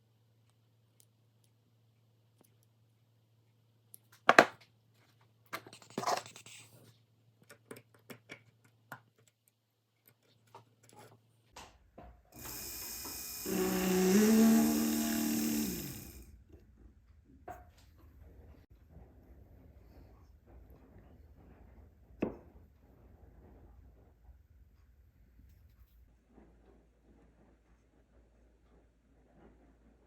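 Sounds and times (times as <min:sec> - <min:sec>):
rotary handpiece whining: 0:12.4 - 0:16.3.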